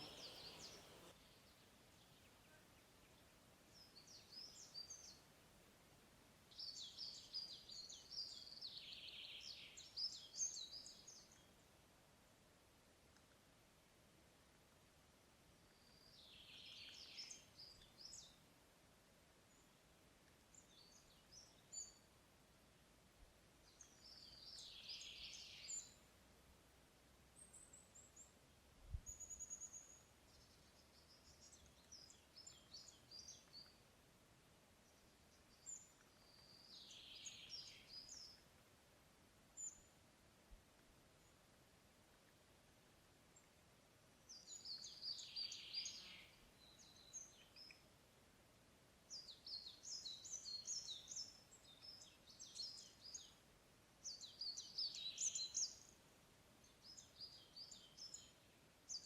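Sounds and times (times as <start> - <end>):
bird song falling in pitch: 0.0 - 1.1
birds chirping and whistling: 0.0 - 1.1.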